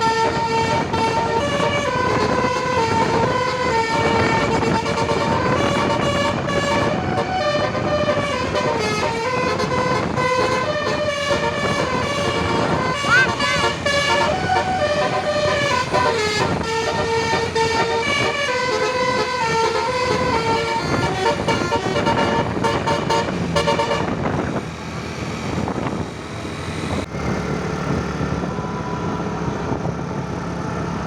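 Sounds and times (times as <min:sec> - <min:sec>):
musical bus horn: 0:00.0 - 0:24.4
traffic noise: 0:00.0 - 0:31.0.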